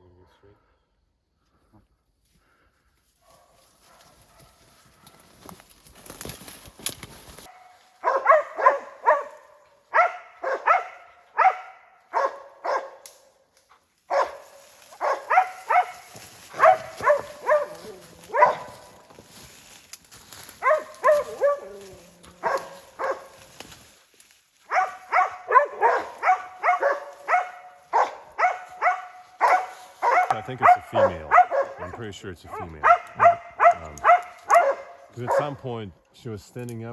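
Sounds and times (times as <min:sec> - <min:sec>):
dogs barking: 0:03.2 - 0:05.4, 0:07.4 - 0:13.1, 0:14.1 - 0:19.1, 0:20.3 - 0:23.6, 0:24.6 - 0:35.7.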